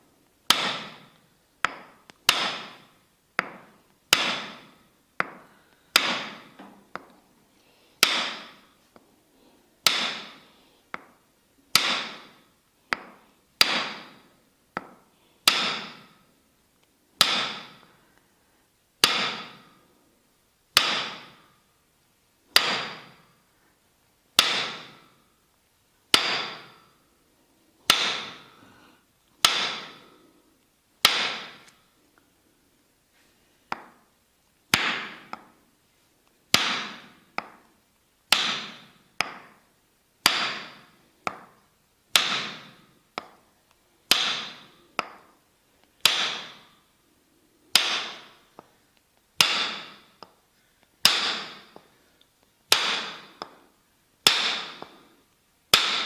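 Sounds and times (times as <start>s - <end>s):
wooden mallet striking wooden stick: 0.5s - 7.2s, 8.0s - 8.6s, 9.8s - 11.1s, 11.7s - 14.2s, 14.8s - 16.2s, 17.2s - 17.9s, 19.0s - 19.8s, 20.8s - 21.4s, 22.6s - 23.2s, 24.4s - 25.1s, 26.1s - 26.9s, 27.9s - 28.6s, 29.4s - 30.2s, 31.0s - 31.8s, 34.7s - 35.6s, 36.5s - 37.7s, 38.3s - 39.6s, 40.2s - 43.4s, 44.1s - 45.4s, 46.0s - 46.7s, 47.7s - 48.7s, 49.4s - 50.4s, 51.0s - 51.9s, 52.7s - 53.6s, 54.2s - 55.1s, 55.7s - 56.0s.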